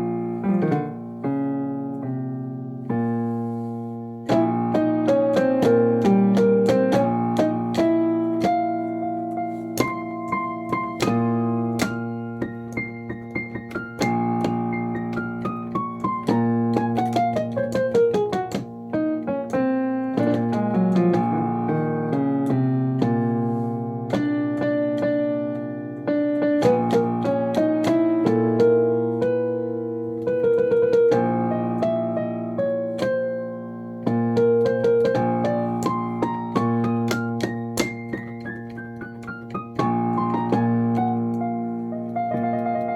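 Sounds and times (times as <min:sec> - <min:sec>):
keyboard music: 0:00.0 - 0:42.9.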